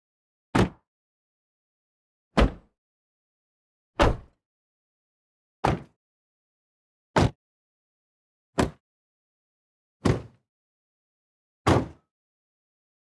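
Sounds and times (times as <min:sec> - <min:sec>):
car door closing thud: 0:02.4 - 0:02.6, 0:04.0 - 0:04.3.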